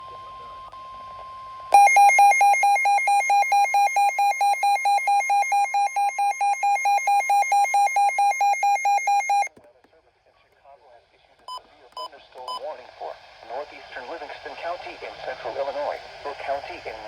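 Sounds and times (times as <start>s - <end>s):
weather radio alert beeping: 1.8s - 9.5s.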